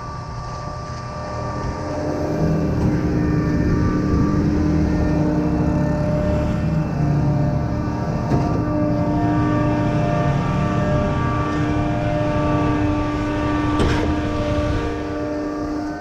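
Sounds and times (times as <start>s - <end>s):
diesel engine running under load: 0.0s - 16.0s.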